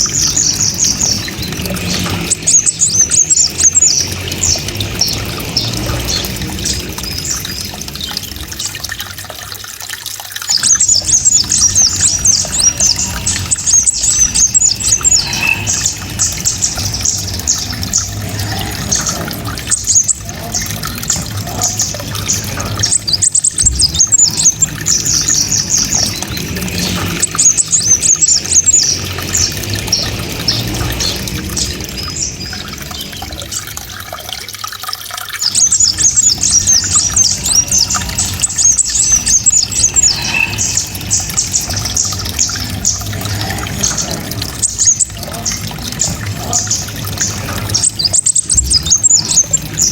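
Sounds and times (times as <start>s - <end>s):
quiet bird chatter: 0.0s - 9.7s, 10.3s - 49.9s
songbird singing shrill chirps: 10.5s - 33.2s, 35.4s - 49.9s.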